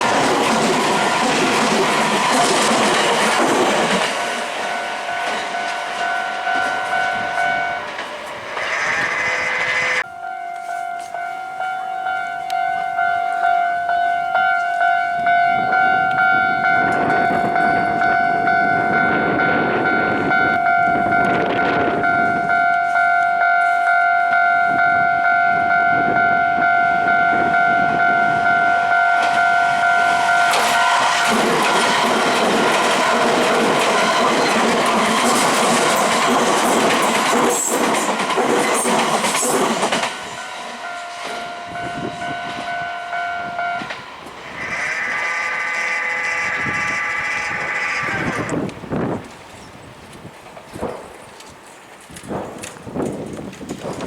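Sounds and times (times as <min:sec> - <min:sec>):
train wheels rattling: 0:00.0 - 0:10.1, 0:27.4 - 0:54.0
level crossing warning bell: 0:00.0 - 0:48.7
train rumbling past: 0:00.0 - 0:54.0.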